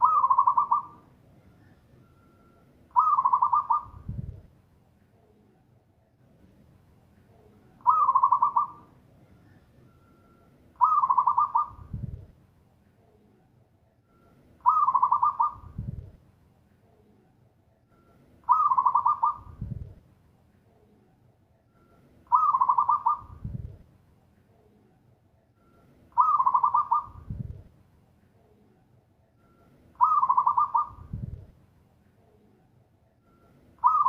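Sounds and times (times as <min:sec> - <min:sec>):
dove trill and deep coo: 0:00.0 - 0:01.1, 0:02.9 - 0:04.4, 0:07.8 - 0:08.9, 0:10.8 - 0:12.3, 0:14.6 - 0:16.1, 0:18.5 - 0:20.0, 0:22.3 - 0:23.8, 0:26.2 - 0:27.7, 0:30.0 - 0:31.5, 0:33.8 - 0:34.0.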